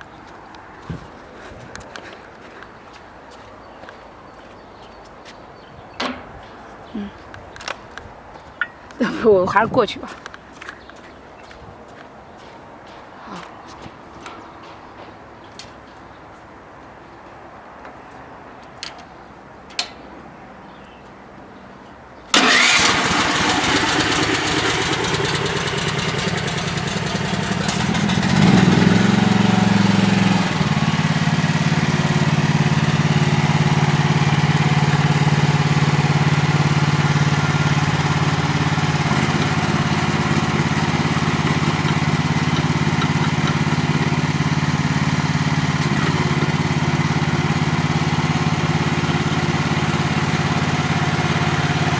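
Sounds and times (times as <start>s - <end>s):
small gasoline engine running: 22.4s - 51.9s.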